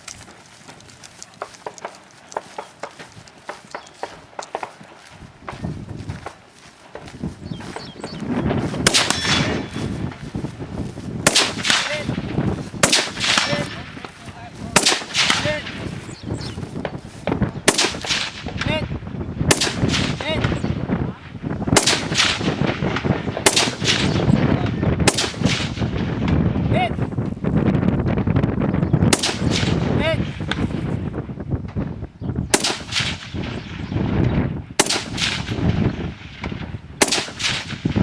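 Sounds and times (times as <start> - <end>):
gunshots with echo: 6.9 - 18.9, 19.5 - 20.8, 21.7 - 26.3, 29.1 - 30.7, 32.5 - 33.9, 34.8 - 38.0.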